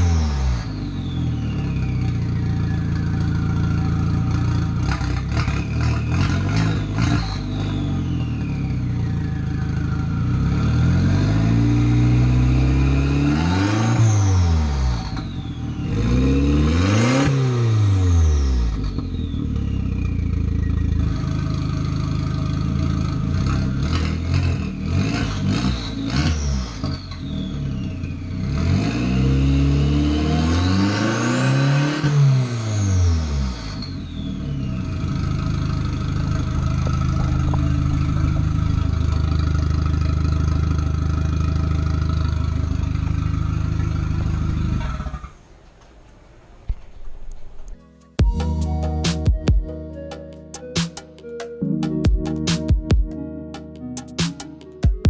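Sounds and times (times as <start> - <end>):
car engine revving: 0.0 - 45.4
engine idling with rapid clatter: 35.1 - 45.4.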